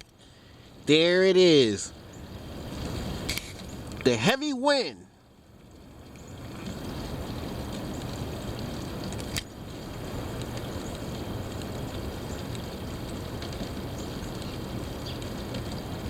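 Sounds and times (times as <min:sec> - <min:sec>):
heavy wind blowing: 0:00.0 - 0:04.2.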